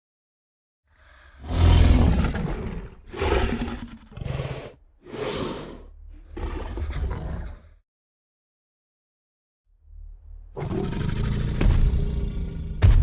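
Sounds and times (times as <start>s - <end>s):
dinosaur roars and growls: 1.0s - 7.8s, 10.5s - 13.0s.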